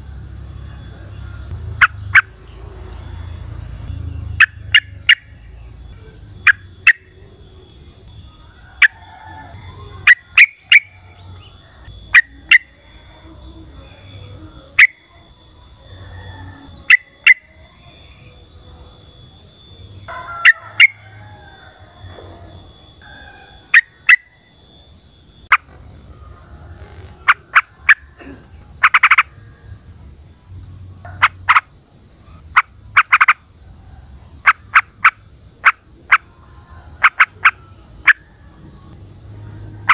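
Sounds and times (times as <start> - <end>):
insect continuous high buzz: 0.0 - 39.9
insect pulsing trill: 0.0 - 39.9
bulbul calling: 1.5 - 2.9, 3.8 - 7.2.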